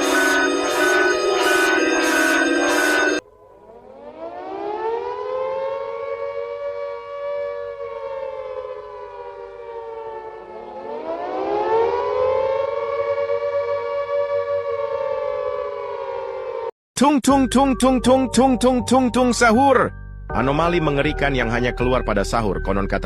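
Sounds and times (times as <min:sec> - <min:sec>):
civil defense siren wailing: 0:00.0 - 0:16.7.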